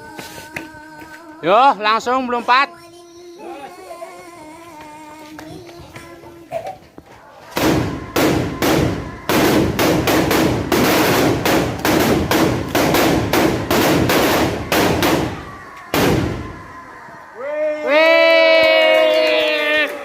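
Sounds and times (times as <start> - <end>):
heavy rhythmic banging: 7.6 - 16.8.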